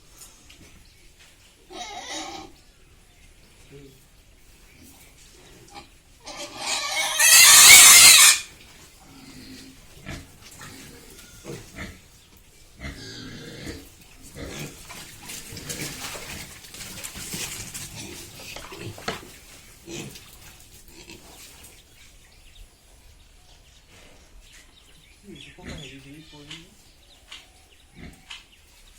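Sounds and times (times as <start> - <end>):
pig squealing loudly: 1.7 - 2.5, 6.2 - 8.5
pigs grunting: 5.4 - 12.1, 12.8 - 21.7, 25.5 - 26.2, 27.8 - 28.5.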